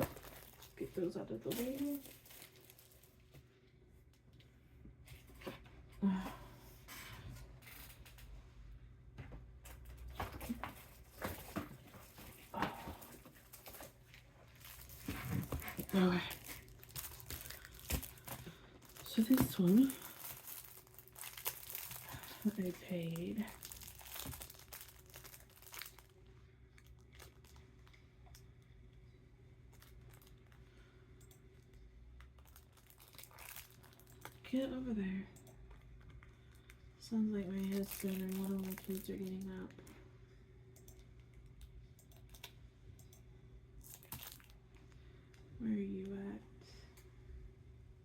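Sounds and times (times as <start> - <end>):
packaged items rustling and tapping: 0.0 - 3.5, 9.2 - 26.1, 32.3 - 34.4, 37.6 - 39.5, 43.8 - 44.5
steady low hum: 0.0 - 48.0.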